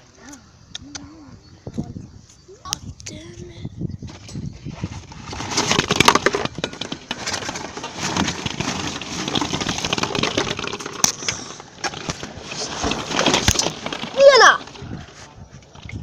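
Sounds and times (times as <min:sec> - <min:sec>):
dense crackling and snapping: 0:04.8 - 0:16.0.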